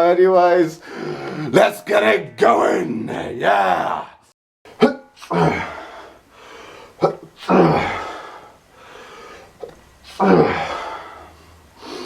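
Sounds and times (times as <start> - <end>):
man sneezing: 4.7 - 5.9, 7.0 - 8.2, 10.0 - 10.8.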